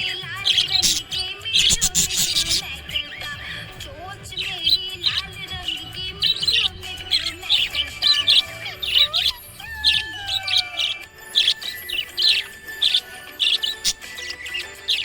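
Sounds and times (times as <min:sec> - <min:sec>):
budgerigars chirping: 0:00.0 - 0:15.0
gliding bird whistles: 0:04.4 - 0:15.0.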